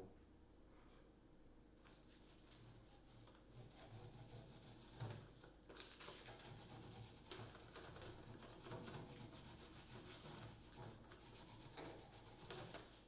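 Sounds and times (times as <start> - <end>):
paper rustling and scratching: 5.7 - 6.5.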